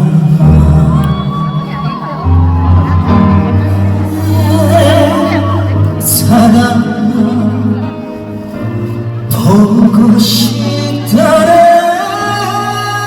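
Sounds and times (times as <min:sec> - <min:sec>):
man singing with vibrato: 0:00.0 - 0:01.7, 0:04.0 - 0:08.5, 0:09.2 - 0:13.0
band playing: 0:00.0 - 0:13.0.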